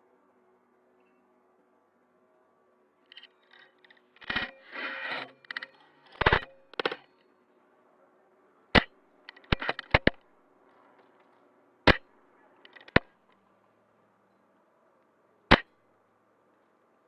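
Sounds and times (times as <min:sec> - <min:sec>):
airsoft rifle snaps and clicks: 0:08.8 - 0:10.2.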